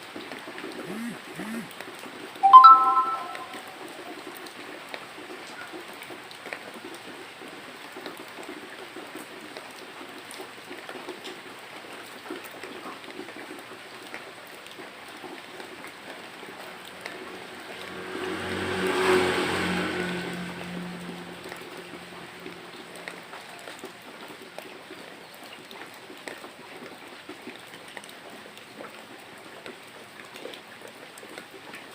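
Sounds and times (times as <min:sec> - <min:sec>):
steady rain falling: 0:04.3 - 0:31.9
vehicle passing: 0:16.7 - 0:23.2.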